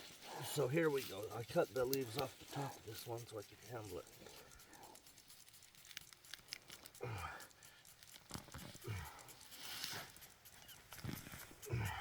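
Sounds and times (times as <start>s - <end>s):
stems and roots tearing: 5.2s - 7.0s.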